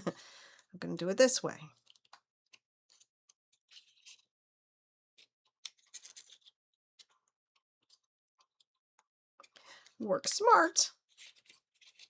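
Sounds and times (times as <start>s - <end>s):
plastic model pieces clicking: 1.8s - 3.1s, 5.6s - 8.7s, 11.1s - 12.0s.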